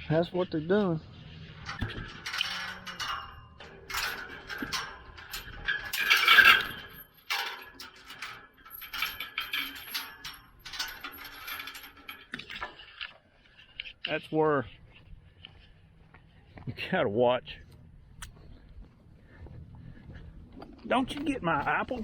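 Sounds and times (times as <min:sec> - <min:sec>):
metal gate rattling and clanking: 0:00.0 - 0:13.1.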